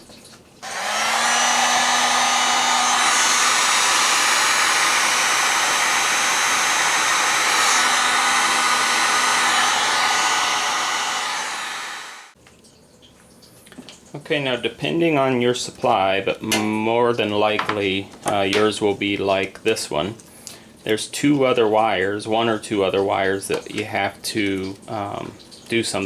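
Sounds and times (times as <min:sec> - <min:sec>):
heat gun blowing air: 0:00.6 - 0:12.4.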